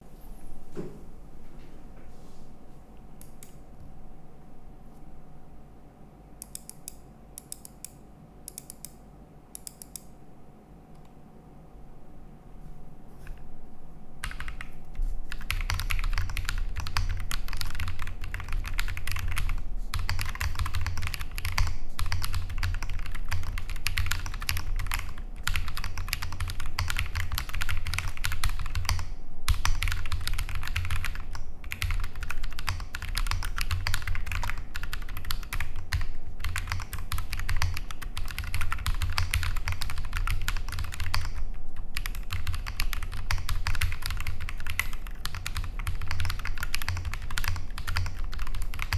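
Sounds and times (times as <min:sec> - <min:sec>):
fast mechanical keyboard typing: 0:14.2 - 0:48.9.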